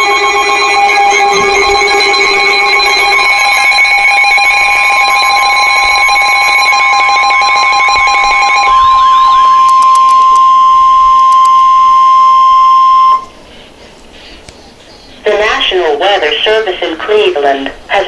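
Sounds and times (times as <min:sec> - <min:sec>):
warbling electronic alert tones: 0:00.0 - 0:13.3
steady high tone: 0:00.0 - 0:13.5.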